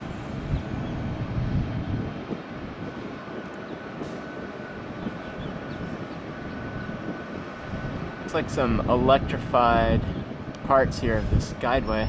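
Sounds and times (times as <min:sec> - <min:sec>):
faint high whine: 0:00.0 - 0:12.0
jet engine rumble: 0:00.0 - 0:12.0.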